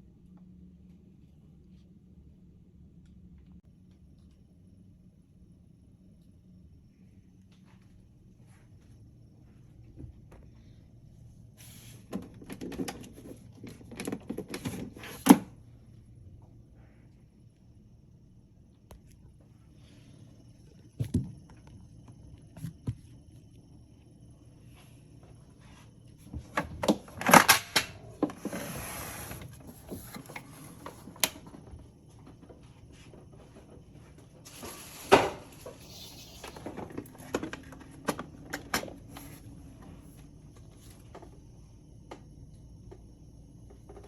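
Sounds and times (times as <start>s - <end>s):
brief hissing or rustling: 34.5s - 36.8s.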